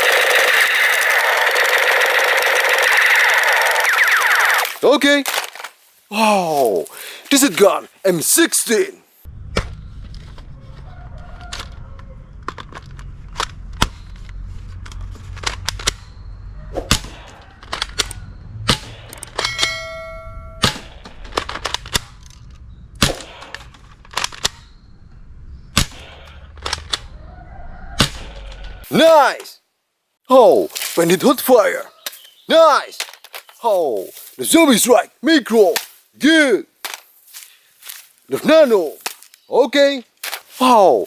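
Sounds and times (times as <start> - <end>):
toy blaster plastic clicks: 0.0 - 4.8
low rumble: 9.3 - 10.9, 19.9 - 27.4
steady tone: 19.4 - 21.0.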